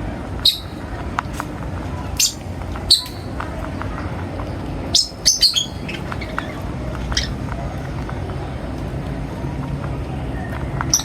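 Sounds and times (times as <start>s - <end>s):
birds chirping: 0.4s - 1.0s, 2.0s - 7.4s.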